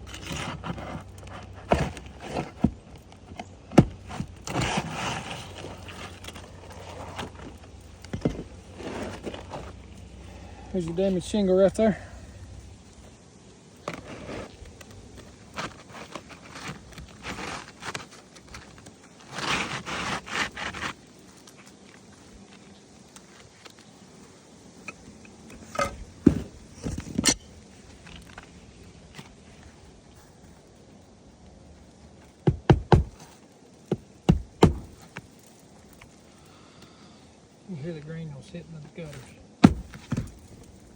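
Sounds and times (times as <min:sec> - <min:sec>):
roof shingle scraping: 0:00.0 - 0:10.0, 0:13.8 - 0:30.6, 0:32.1 - 0:36.0, 0:38.9 - 0:40.9
knocks on roof shingle: 0:32.4 - 0:33.3, 0:33.9 - 0:35.1, 0:39.6 - 0:40.6.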